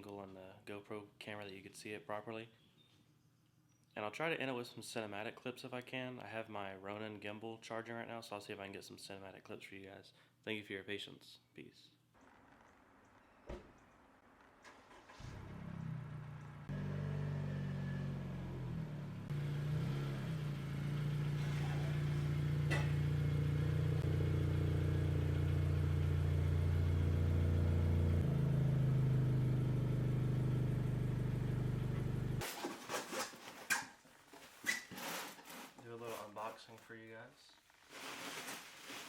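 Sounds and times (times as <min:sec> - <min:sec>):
car engine starting and idling: 0:12.3 - 0:32.4.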